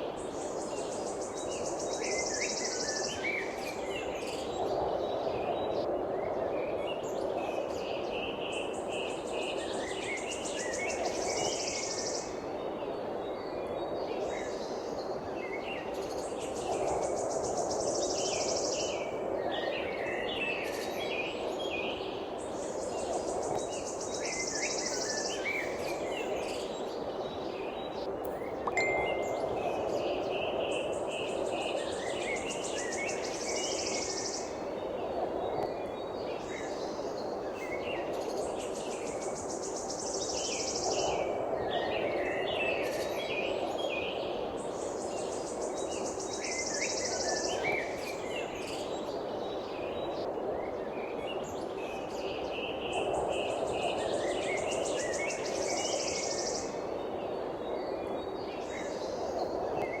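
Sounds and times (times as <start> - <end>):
birds chirping: 28.3 - 30.6.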